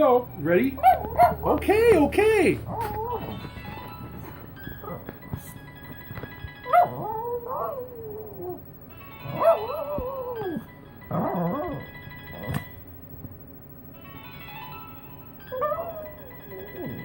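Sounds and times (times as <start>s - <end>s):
dog howling: 0.8s - 4.2s, 6.7s - 12.5s, 15.5s - 17.0s
phone ringtone melody: 3.1s - 13.1s, 13.9s - 17.0s.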